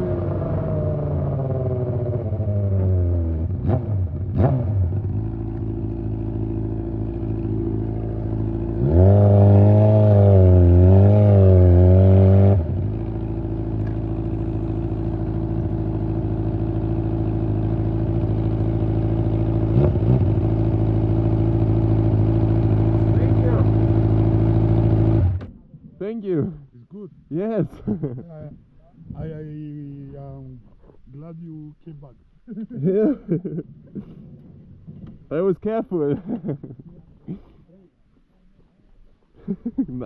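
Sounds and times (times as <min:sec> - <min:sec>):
motorcycle engine revving: 0:00.0 - 0:25.6.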